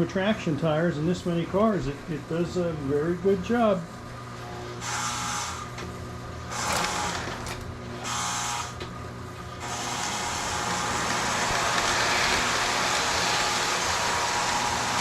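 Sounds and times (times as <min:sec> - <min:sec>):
toy train motor humming: 0:04.5 - 0:05.8, 0:06.4 - 0:15.0.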